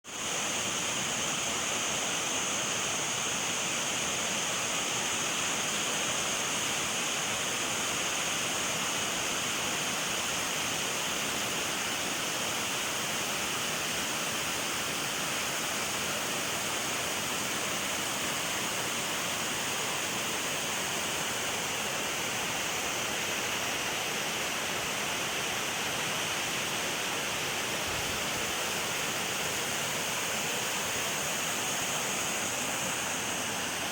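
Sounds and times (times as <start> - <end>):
waterfall rushing: 0.1 - 33.9.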